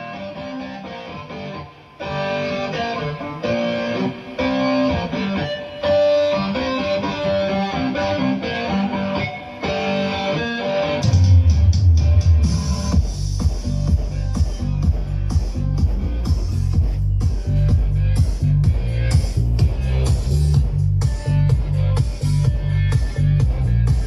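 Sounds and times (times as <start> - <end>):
plucked guitar melody: 0.0 - 12.5
heavy deep bass: 11.0 - 24.0.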